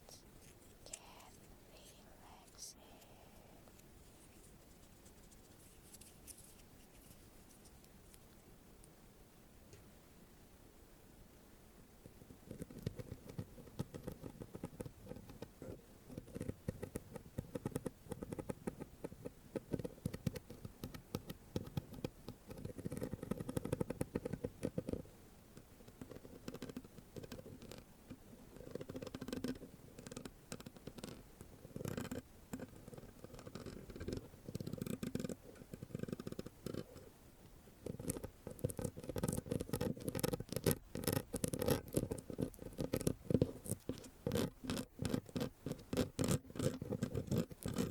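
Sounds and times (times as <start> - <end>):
scratching on a microphone: 4.0 - 7.8, 12.2 - 25.1, 25.8 - 37.1, 37.8 - 47.9.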